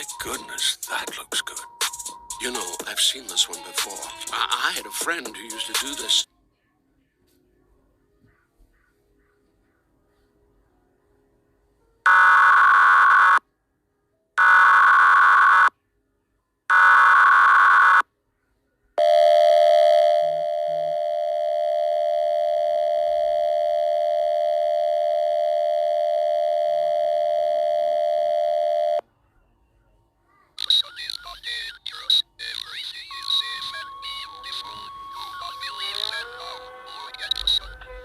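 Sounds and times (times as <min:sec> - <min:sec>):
buzzy attention tone: 0:33.2 - 0:38.0
warbling data screech: 0:33.2 - 0:38.0.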